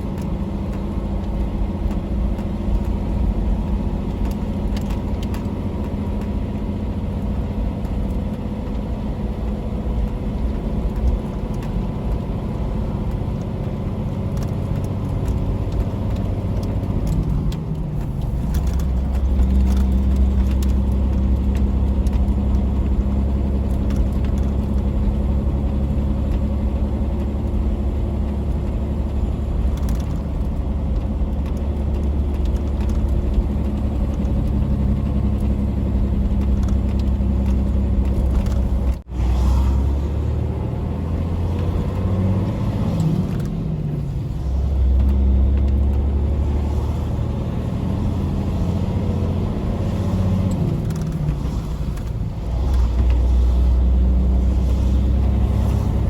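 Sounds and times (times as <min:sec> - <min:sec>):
truck engine running: 0:00.0 - 0:56.0.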